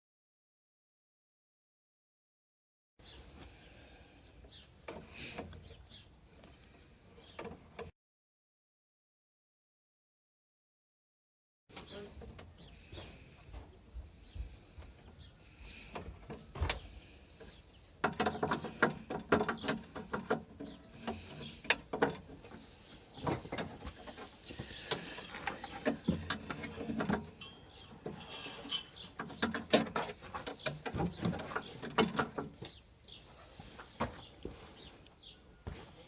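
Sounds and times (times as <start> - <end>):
small hard parts clattering: 15.8 - 32.8.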